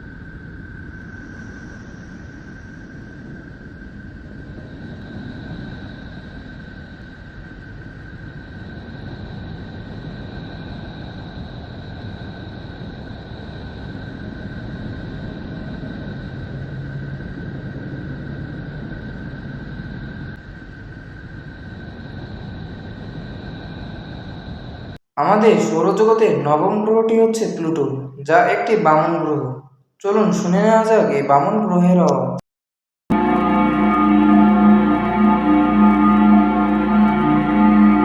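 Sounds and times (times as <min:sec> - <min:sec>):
low noise drone: 0:00.0 - 0:32.4, 0:33.1 - 0:38.0
thin high tones: 0:33.1 - 0:38.0.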